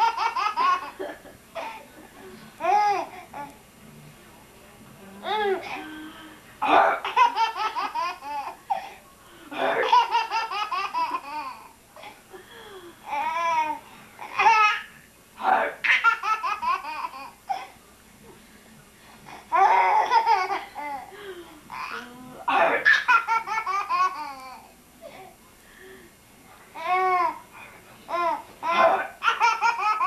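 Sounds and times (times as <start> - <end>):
baby laughing: 0.0 - 1.8, 7.0 - 8.8, 9.6 - 11.7, 13.1 - 14.9, 15.8 - 17.7, 19.5 - 21.1, 22.8 - 24.7, 28.1 - 30.0.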